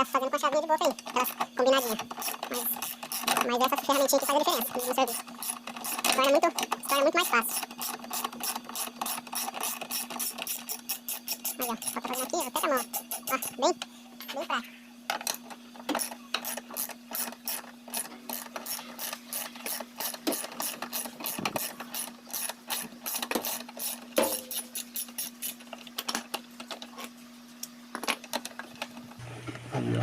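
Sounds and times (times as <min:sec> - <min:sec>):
ratchet wrench clicking: 0:16.0 - 0:25.6.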